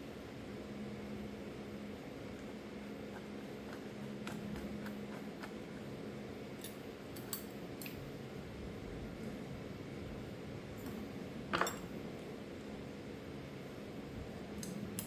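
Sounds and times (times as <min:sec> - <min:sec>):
light metallic clicks and taps: 0:06.6 - 0:08.0.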